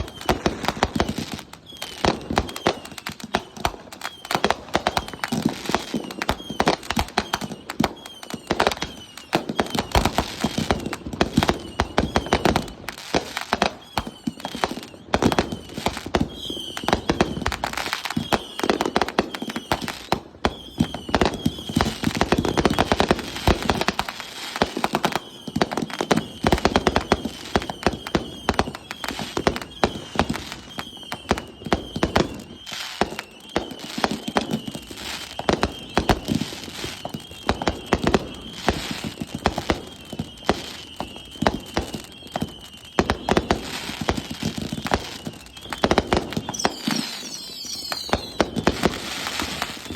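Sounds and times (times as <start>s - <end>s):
fireworks bangs and crackles: 0.0s - 49.9s
short high chirp: 46.6s - 48.4s.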